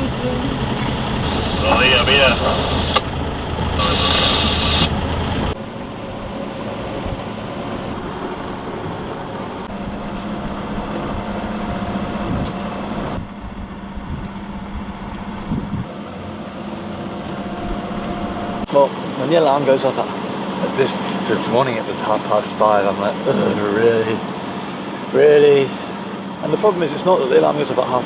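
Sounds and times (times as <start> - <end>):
boat engine humming: 0.0 - 28.0
loud hiss: 1.2 - 3.1, 3.8 - 5.0.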